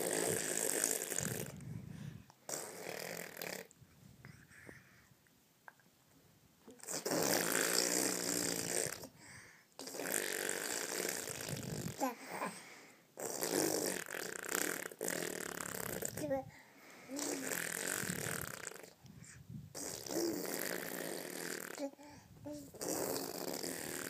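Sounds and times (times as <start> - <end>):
loud snoring: 0.0 - 1.6, 2.5 - 3.7, 6.9 - 9.1, 9.8 - 12.1, 13.2 - 16.3, 17.1 - 18.9, 19.8 - 21.9, 22.6 - 24.0.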